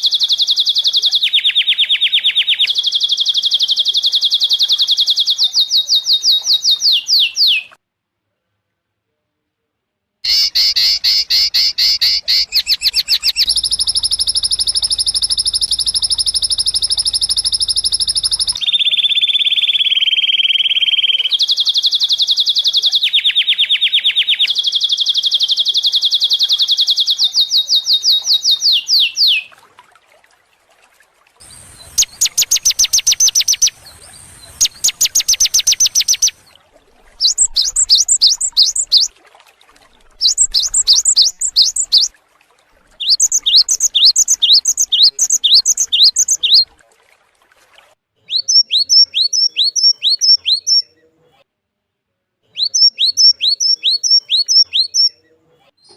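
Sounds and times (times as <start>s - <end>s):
down-slurred whistled notes: 10.3s - 18.6s
songbird trilling: 10.3s - 26.2s, 31.4s - 36.5s, 37.1s - 39.1s, 40.2s - 42.1s, 43.0s - 46.7s, 48.3s - 50.9s, 52.6s - 55.2s.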